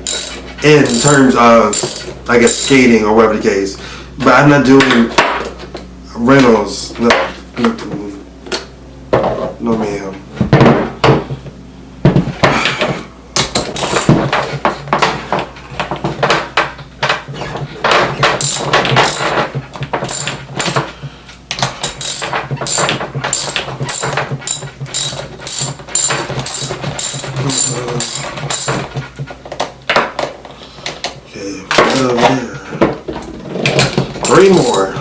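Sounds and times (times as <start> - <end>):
ratchet wrench clicking: 0.0 - 1.2, 1.8 - 2.7, 18.4 - 19.3, 20.1 - 20.8, 21.8 - 28.7.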